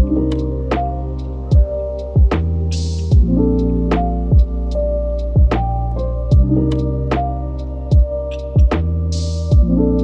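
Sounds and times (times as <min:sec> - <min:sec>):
kick drum beat: 0:01.5 - 0:02.4, 0:03.1 - 0:03.4, 0:04.3 - 0:04.5, 0:05.4 - 0:05.6, 0:06.3 - 0:06.5, 0:07.9 - 0:08.8, 0:09.5 - 0:09.7.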